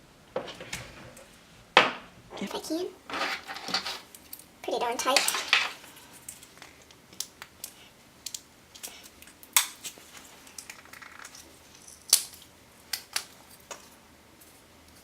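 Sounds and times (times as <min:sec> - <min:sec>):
plastic parts clicking and snapping: 0:06.7 - 0:09.9.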